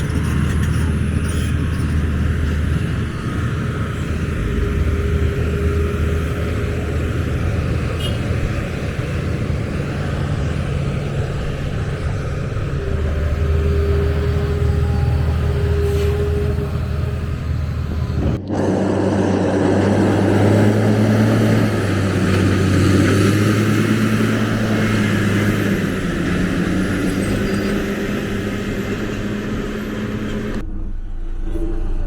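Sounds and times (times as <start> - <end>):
engines humming: 0.0 - 32.0.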